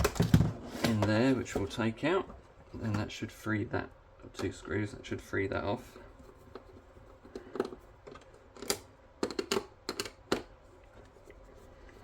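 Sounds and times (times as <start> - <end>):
plastic and metal parts handled: 5.9 - 12.0.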